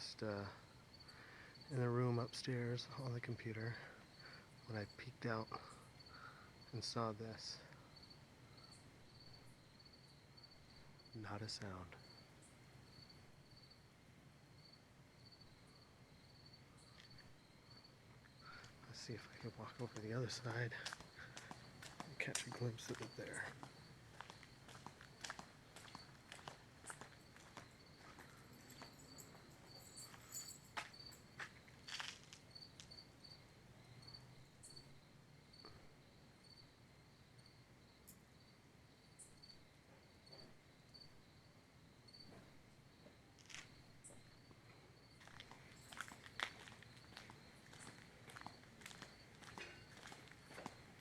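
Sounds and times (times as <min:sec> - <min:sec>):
crickets chirping faintly: 0:00.0 - 0:51.0.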